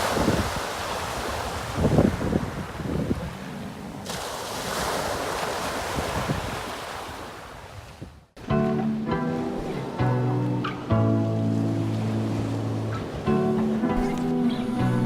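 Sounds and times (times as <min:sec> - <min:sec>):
wind gusting against microphone: 0:00.0 - 0:08.3.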